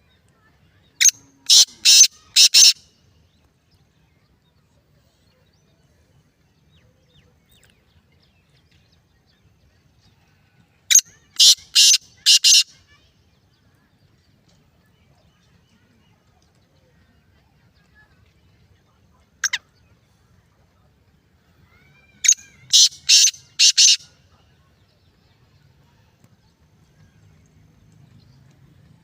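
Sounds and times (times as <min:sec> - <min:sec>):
francolin calling: 0:22.2 - 0:24.0.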